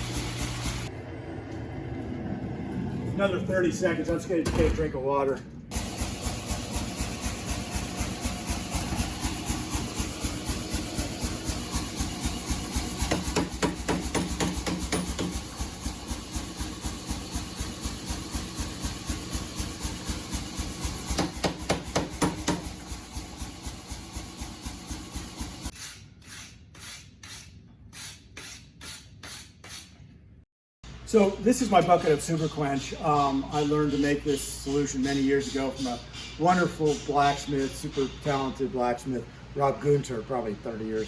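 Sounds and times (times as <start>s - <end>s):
motor hum: 0.0s - 3.2s, 5.6s - 25.7s
power hammer striking hot steel: 5.7s - 25.6s
sharp metallic knocks: 13.0s - 15.4s, 21.1s - 22.8s.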